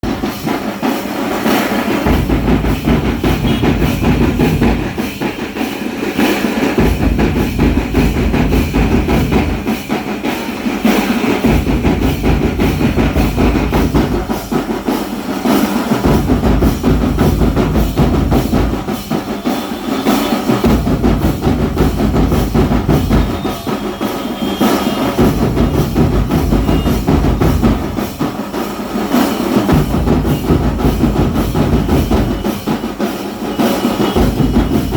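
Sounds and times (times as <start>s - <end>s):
music with drums and heavy bass: 0.0s - 34.9s.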